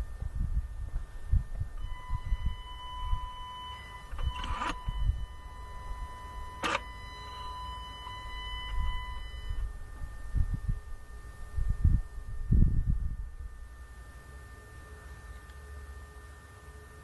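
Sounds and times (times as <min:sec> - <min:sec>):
electric actuator high whine: 0:00.0 - 0:17.0
actuator motor whirring: 0:01.8 - 0:13.6.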